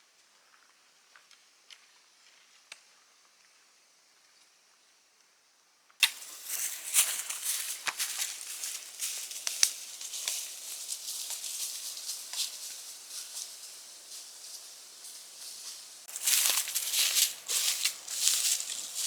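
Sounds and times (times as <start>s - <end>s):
footsteps through dry leaves: 6.0s - 19.0s.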